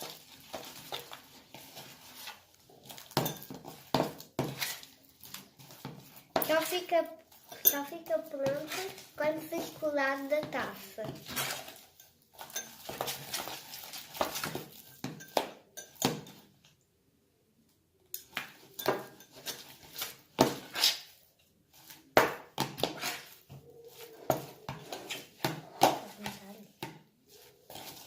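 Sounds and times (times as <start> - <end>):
spoon scraping slime in bowl: 0.0 - 16.4, 18.2 - 22.2, 22.8 - 25.4.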